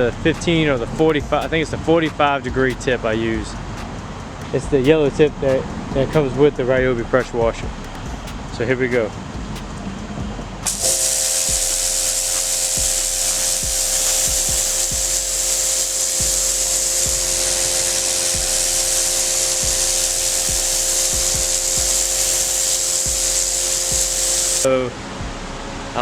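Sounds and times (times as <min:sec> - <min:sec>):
pressure washer jet hissing: 0:10.6 - 0:24.7
electric motor and pump hum: 0:10.6 - 0:25.9.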